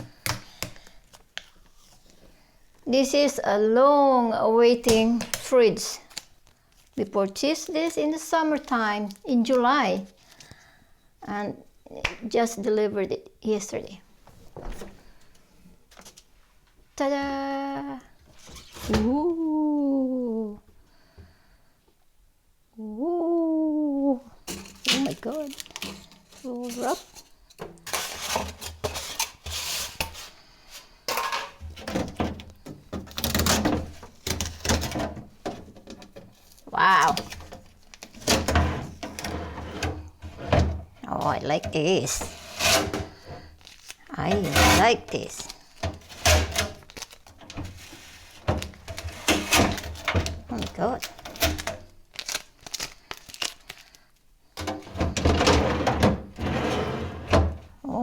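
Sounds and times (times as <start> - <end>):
plastic wrapping crinkling: 4.9 - 10.5, 24.4 - 39.3, 41.1 - 54.3
rubbing and scraping: 24.4 - 36.6, 37.2 - 43.6, 44.2 - 51.8, 54.6 - 57.7.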